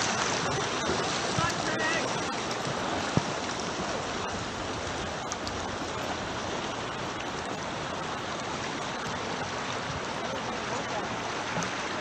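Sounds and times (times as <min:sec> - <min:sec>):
water churned by kayak paddles: 0:00.0 - 0:12.0
faint clicks: 0:05.2 - 0:05.6.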